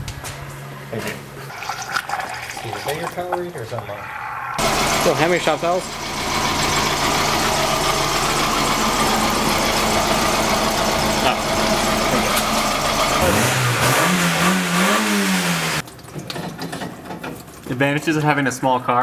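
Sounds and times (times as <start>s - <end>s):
engine revving: 4.4s - 15.8s
engine running: 4.4s - 15.8s.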